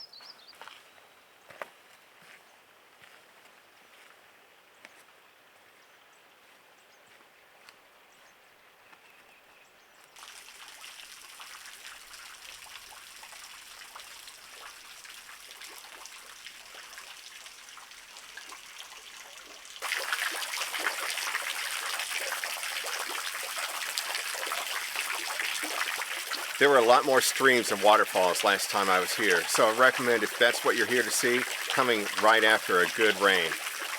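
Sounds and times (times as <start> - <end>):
small waterfall splashing: 10.2 - 33.9.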